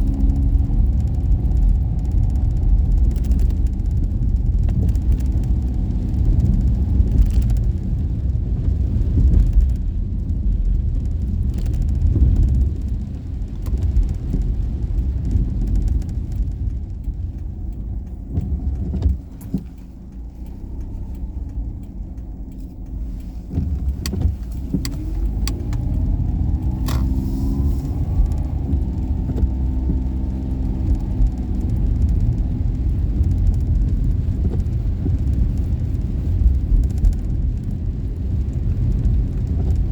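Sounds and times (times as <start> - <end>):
road rumble: 0.0 - 39.9
small car engine: 18.5 - 35.1.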